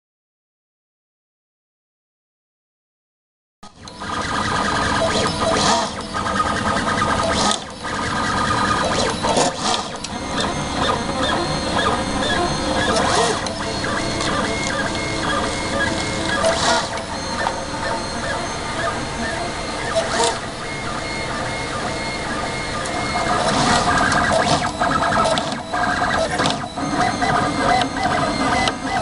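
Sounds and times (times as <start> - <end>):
stepper motors whining: 3.8 - 29.0.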